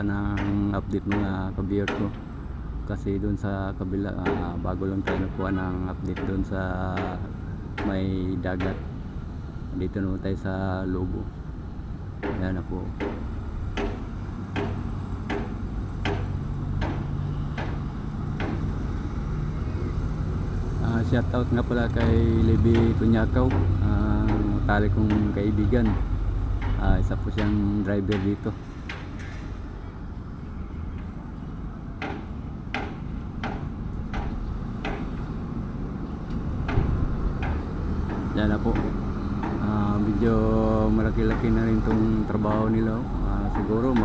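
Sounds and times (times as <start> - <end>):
machinery humming: 0.0 - 44.0
hammering: 0.2 - 2.3, 4.1 - 9.1, 12.1 - 44.0
wind rumble: 17.4 - 28.9, 29.5 - 44.0.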